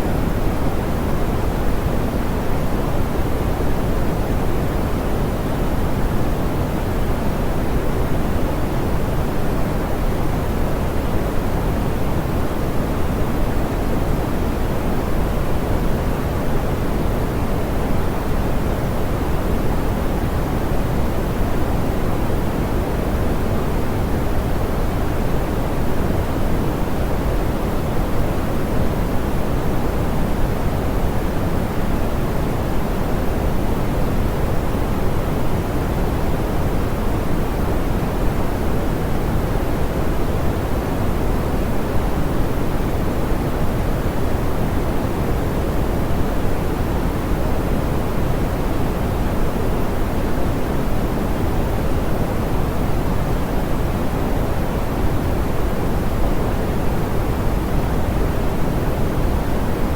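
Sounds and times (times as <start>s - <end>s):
soft pink noise hiss: 0.0s - 59.9s.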